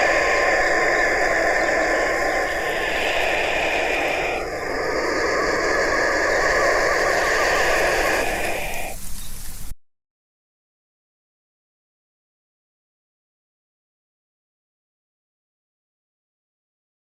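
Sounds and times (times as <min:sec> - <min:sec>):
vultures hissing: 0:00.0 - 0:09.7.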